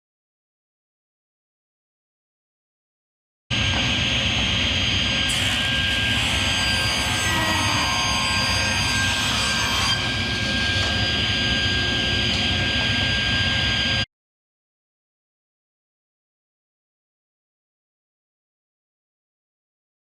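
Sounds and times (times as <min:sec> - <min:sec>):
electric power saw cutting wood: 0:05.1 - 0:14.1.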